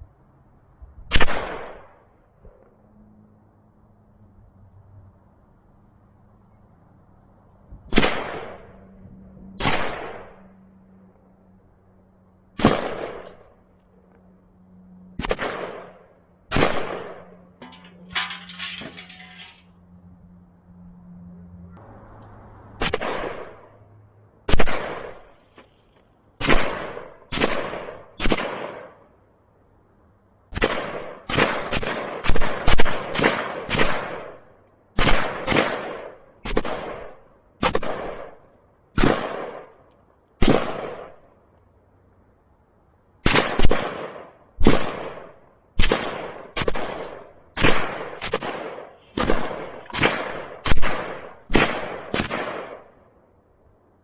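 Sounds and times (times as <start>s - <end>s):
gunshots: 7.9s - 8.6s, 9.6s - 10.4s, 12.6s - 13.5s, 15.2s - 19.6s, 22.8s - 23.6s, 24.5s - 25.3s, 26.4s - 29.0s, 30.6s - 34.4s, 35.0s - 38.4s, 39.0s - 39.7s, 43.2s - 52.9s.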